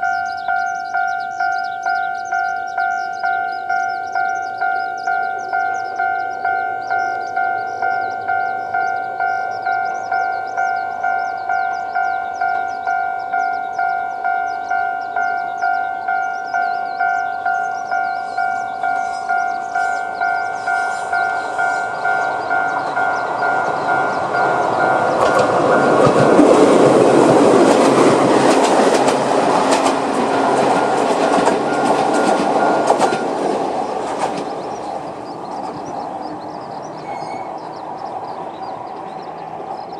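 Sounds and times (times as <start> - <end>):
electric train passing: 0.0 - 39.9
level-crossing alarm ringing: 0.0 - 39.9
train wheels clicking over rail joints: 18.8 - 39.9.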